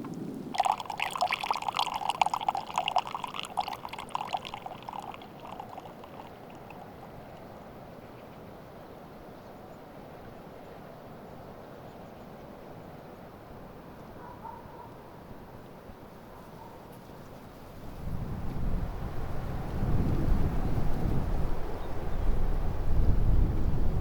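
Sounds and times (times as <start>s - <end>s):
meltwater trickling and gurgling: 0.0s - 7.8s
faint steady hiss: 0.0s - 11.4s.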